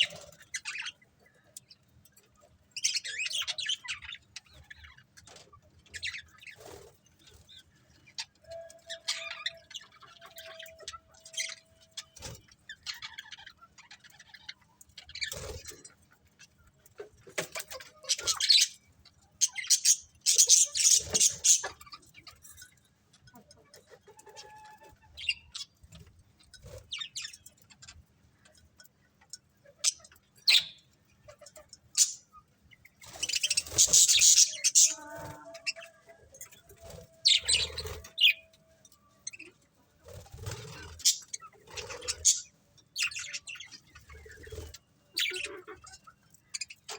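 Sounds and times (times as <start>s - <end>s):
budgies chirping and chattering: 0.0s - 46.9s.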